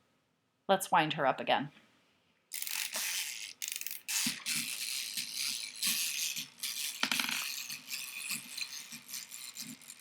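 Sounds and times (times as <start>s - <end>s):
clockwork toy whirring rattle: 2.5s - 10.0s.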